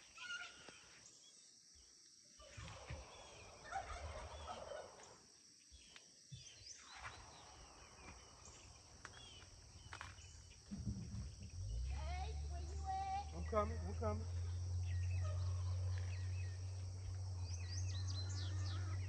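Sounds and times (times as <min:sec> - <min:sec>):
insect drone: 0:00.0 - 0:19.0
faint bird calls: 0:05.9 - 0:19.0.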